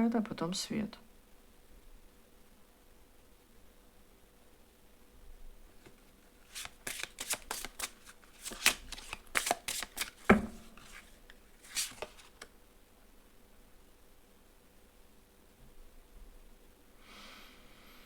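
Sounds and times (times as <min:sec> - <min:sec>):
cards being shuffled: 0:05.8 - 0:12.5.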